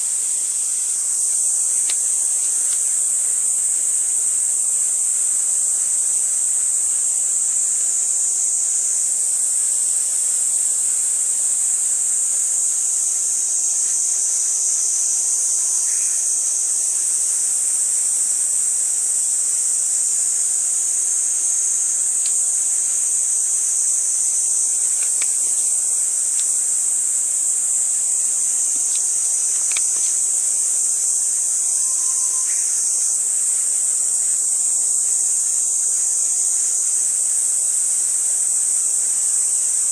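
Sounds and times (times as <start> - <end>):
insects chirring: 0.0 - 39.9
faint ticks: 1.8 - 3.3, 21.8 - 30.9.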